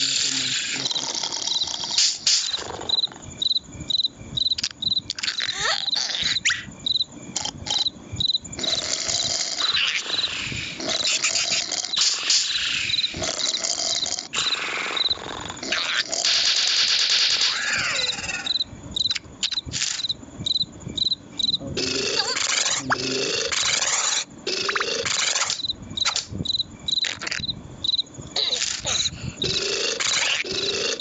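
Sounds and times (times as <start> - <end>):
cricket chirping: 0.0 - 31.0
cartoon sound effects: 17.2 - 18.6.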